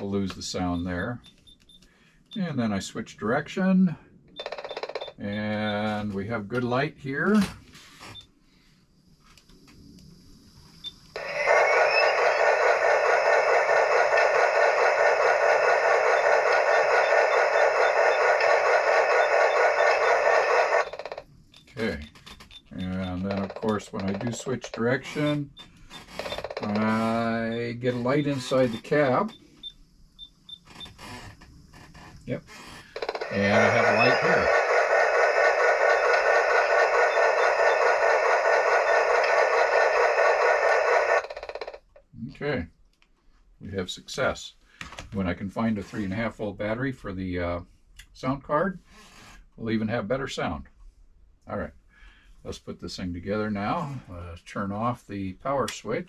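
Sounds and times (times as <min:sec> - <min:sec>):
steam engine sound from small speaker: 0:11.2 - 0:20.9, 0:33.2 - 0:41.2.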